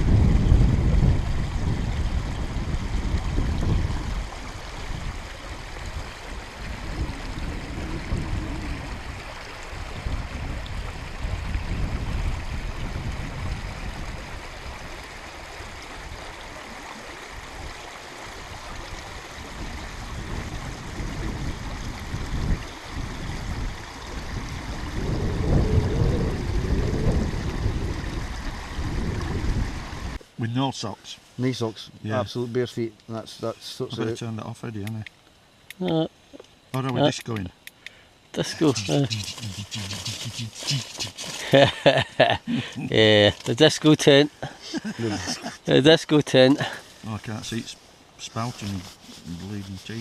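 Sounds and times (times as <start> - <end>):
wind buffeting microphone: 0.0 - 16.3, 17.3 - 30.2
small stream running: 0.0 - 50.0.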